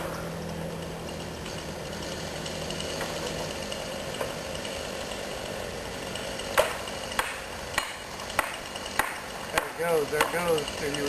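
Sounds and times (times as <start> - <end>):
chainsaw idling: 0.0 - 11.0
sharp knocks: 6.6 - 10.6.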